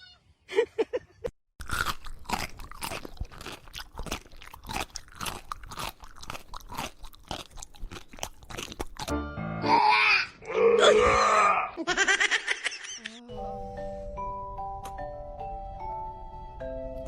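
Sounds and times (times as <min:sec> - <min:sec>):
crunchy food being chewed: 0:01.6 - 0:09.2.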